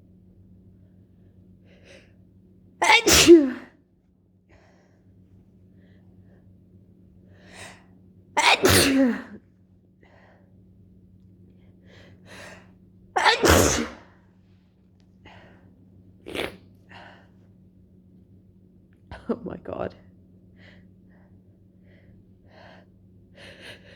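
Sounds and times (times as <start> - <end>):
person sneezing: 2.8 - 3.7, 8.4 - 9.4, 13.2 - 14.2, 16.3 - 16.6.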